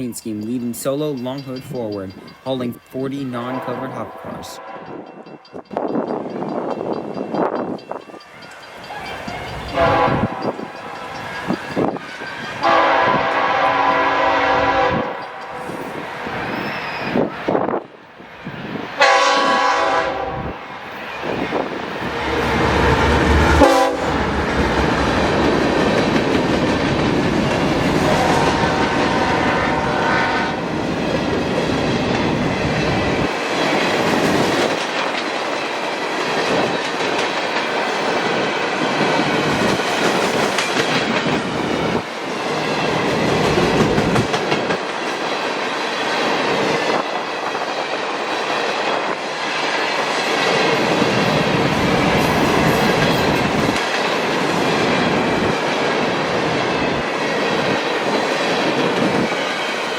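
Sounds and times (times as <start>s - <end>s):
locomotive horn: 3.5s - 5.1s, 9.7s - 11.2s, 12.6s - 15.9s, 19.0s - 20.6s, 22.3s - 24.4s, 28.0s - 30.6s
train wheels clacking over rail joints: 30.6s - 59.9s.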